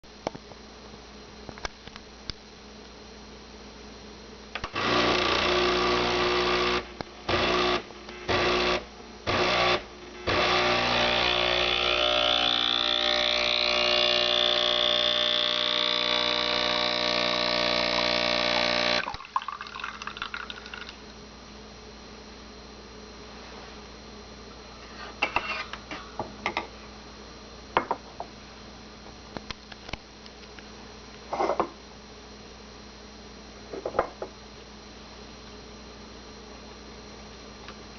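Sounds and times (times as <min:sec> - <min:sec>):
espresso machine buzzing: 0:04.7 - 0:21.0.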